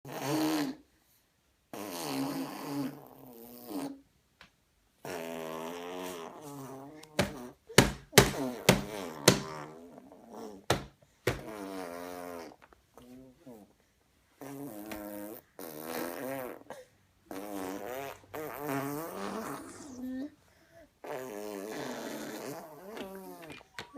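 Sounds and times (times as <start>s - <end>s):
baby making vocal sound: 14.4s - 20.4s.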